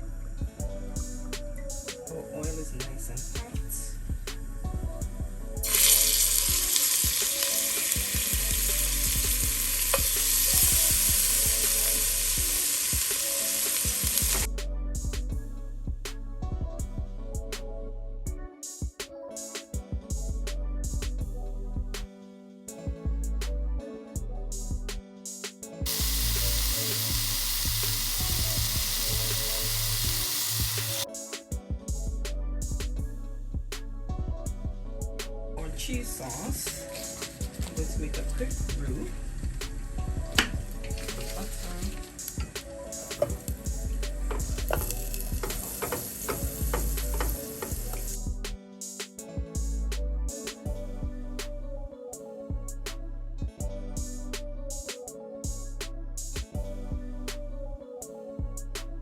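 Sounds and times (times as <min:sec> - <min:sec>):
background music with steady beat: 0:00.0 - 0:59.0
meat sizzling in hot oil: 0:05.6 - 0:14.5, 0:25.9 - 0:31.1, 0:40.6 - 0:48.2.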